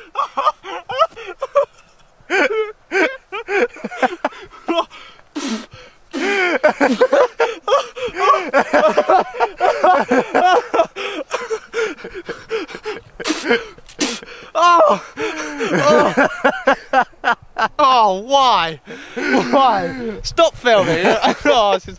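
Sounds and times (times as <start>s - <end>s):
short hissing noises: 4.9s - 7.0s, 13.1s - 14.5s
young people talking excitedly: 17.9s - 21.9s.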